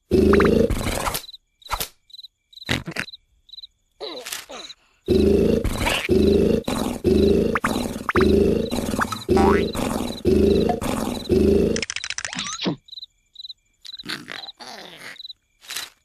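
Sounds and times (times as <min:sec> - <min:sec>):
cartoon character snoring: 0:00.0 - 0:01.0, 0:05.1 - 0:11.9
cricket chirping: 0:00.1 - 0:16.0.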